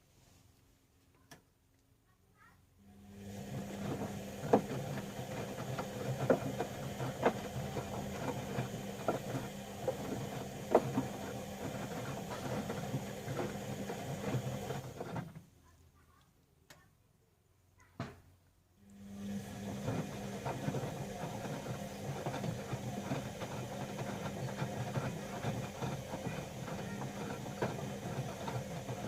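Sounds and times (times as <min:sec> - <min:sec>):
washing machine motor hum: 0:02.8 - 0:15.5, 0:18.8 - 0:29.0
laundry tumbling in drum: 0:03.3 - 0:15.4, 0:19.3 - 0:29.0.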